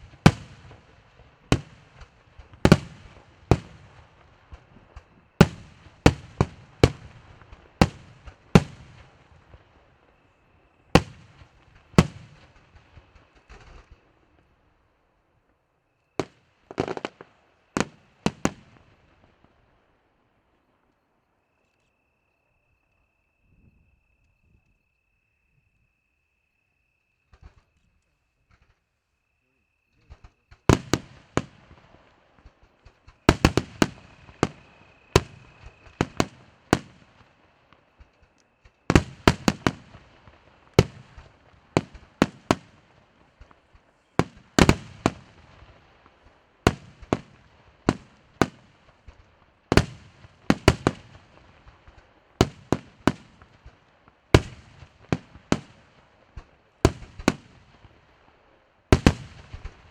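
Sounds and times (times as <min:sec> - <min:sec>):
fireworks bangs: 0:00.0 - 0:10.2, 0:10.9 - 0:14.4, 0:16.2 - 0:19.5, 0:30.1 - 0:58.2, 0:58.9 - 0:59.9.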